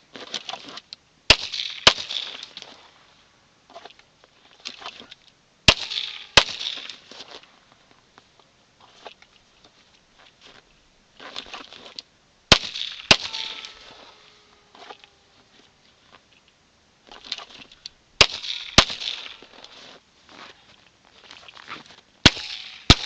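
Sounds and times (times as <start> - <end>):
handgun shots: 12.5 - 13.8, 18.2 - 19.5, 22.3 - 23.0.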